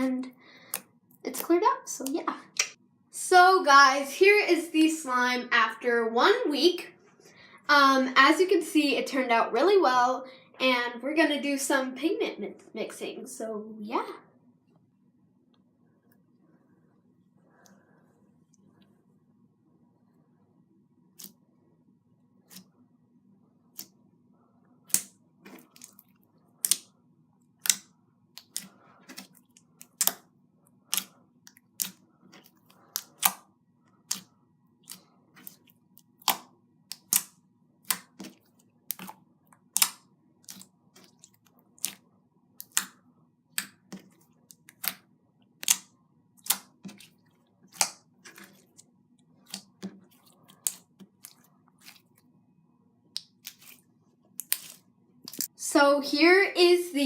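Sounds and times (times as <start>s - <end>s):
slime popping and clicking: 24.9s - 25.1s, 27.6s - 30.3s, 34.1s - 38.3s, 38.9s - 41.2s, 42.6s - 45.0s, 45.6s - 47.1s.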